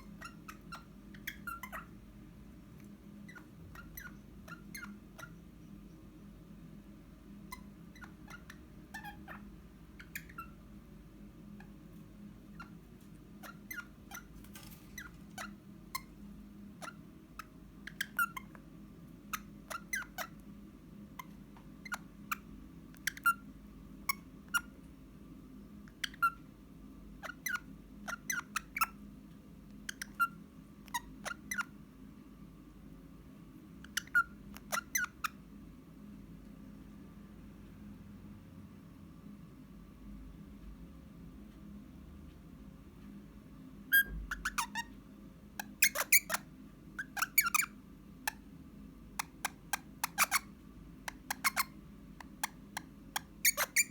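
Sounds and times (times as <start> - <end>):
parrot sharp chirping calls: 0.0 - 1.9, 7.5 - 9.4, 10.0 - 10.6, 45.6 - 46.4, 47.0 - 47.7, 49.2 - 50.5, 51.1 - 52.5, 53.2 - 53.9
low household hum: 0.0 - 53.9.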